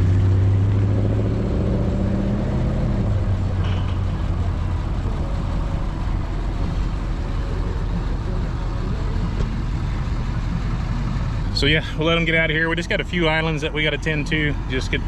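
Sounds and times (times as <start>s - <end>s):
low engine rumble: 0.0s - 15.0s.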